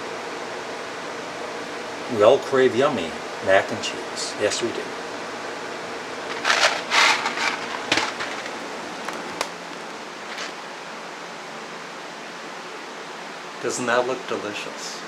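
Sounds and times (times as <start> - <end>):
steady room hiss: 0.0 - 15.0
short rustling: 6.2 - 10.6.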